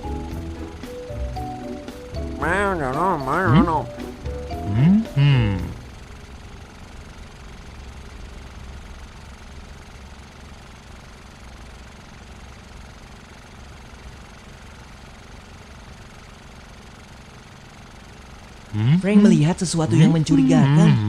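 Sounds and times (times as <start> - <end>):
cartoon car engine rumble: 0.0 - 9.9, 16.6 - 21.0.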